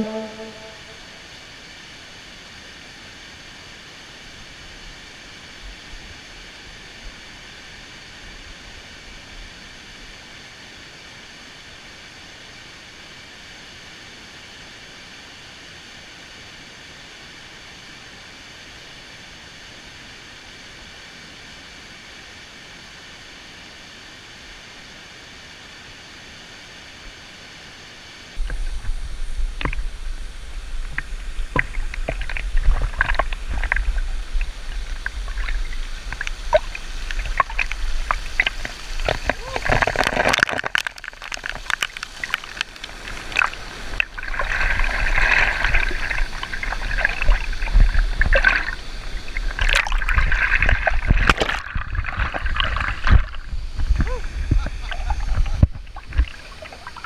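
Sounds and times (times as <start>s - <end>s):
low rumble with crackling: 28.4s - 56.7s
waterfall rushing: 28.4s - 57.0s.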